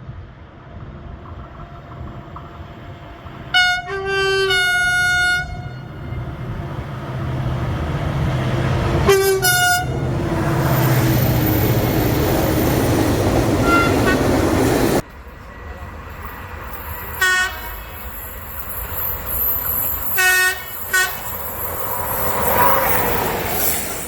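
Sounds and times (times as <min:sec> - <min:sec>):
train wheels and rail noise: 0:00.0 - 0:24.0
train horn blasts: 0:03.5 - 0:06.3, 0:09.0 - 0:10.0, 0:13.6 - 0:14.4, 0:17.2 - 0:17.8, 0:20.2 - 0:21.3.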